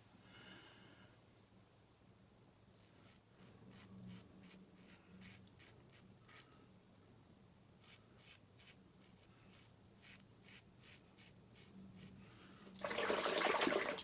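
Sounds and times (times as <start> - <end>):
razor scraping stubble: 2.8 - 6.5, 7.8 - 12.2
running water rushing: 12.7 - 14.0.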